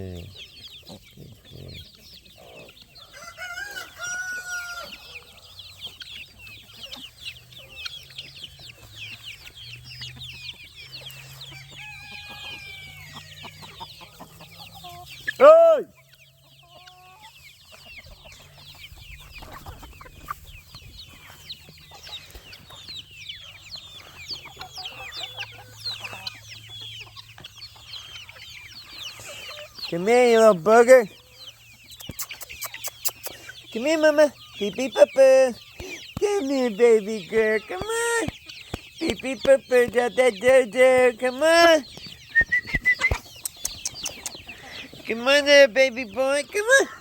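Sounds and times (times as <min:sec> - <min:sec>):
chickens clucking: 0:00.0 - 0:47.0
rooster crowing: 0:03.0 - 0:05.2, 0:11.5 - 0:13.5
man shouting: 0:15.4 - 0:15.9.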